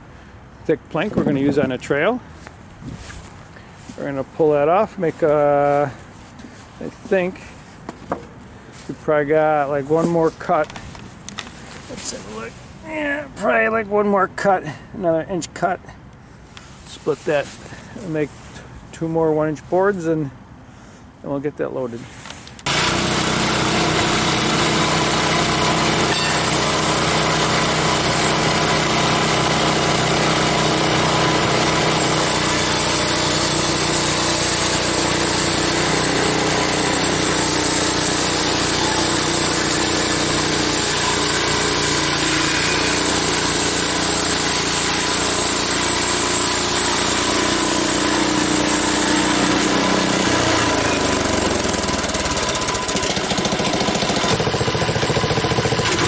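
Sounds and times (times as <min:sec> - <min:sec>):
saw blade cutting log: 0:22.6 - 0:56.0
sawmill engine running: 0:22.6 - 0:56.0.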